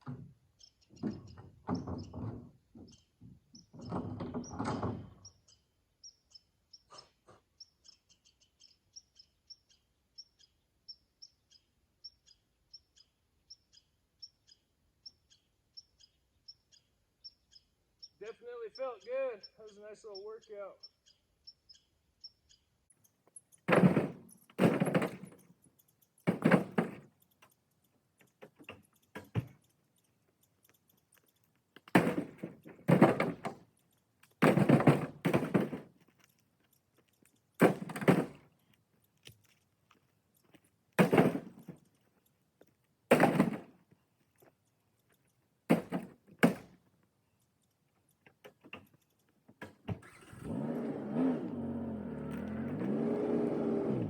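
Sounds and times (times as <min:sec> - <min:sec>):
firewood landing with thunks: 0:23.7 - 0:25.4, 0:26.3 - 0:27.0, 0:29.2 - 0:29.5, 0:31.9 - 0:33.6, 0:34.4 - 0:35.9, 0:37.6 - 0:38.4, 0:41.0 - 0:41.8, 0:43.1 - 0:43.7, 0:45.7 - 0:46.8.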